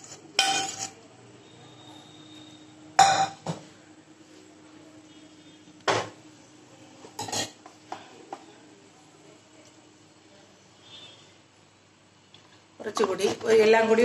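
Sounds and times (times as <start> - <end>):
metal utensil clanking on pot: 0.0 - 1.0, 7.2 - 7.6.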